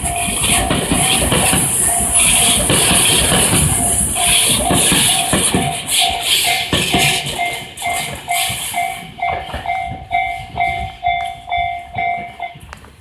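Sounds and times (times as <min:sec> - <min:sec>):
train wheels rolling: 0:00.0 - 0:13.0
level crossing bell dinging: 0:08.8 - 0:12.6.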